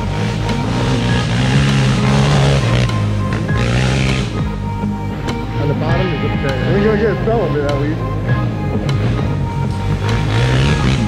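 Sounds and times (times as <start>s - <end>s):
engine running under throttle: 0.0s - 5.1s, 8.1s - 11.0s
background music: 0.0s - 11.0s.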